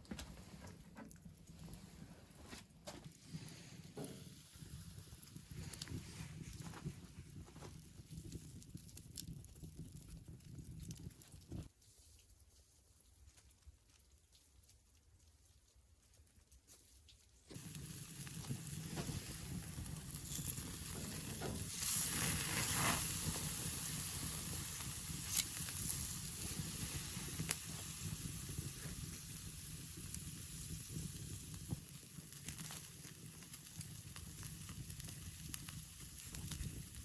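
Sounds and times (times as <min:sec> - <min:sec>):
food sizzling in a pan: 0:17.5 - 0:37.0.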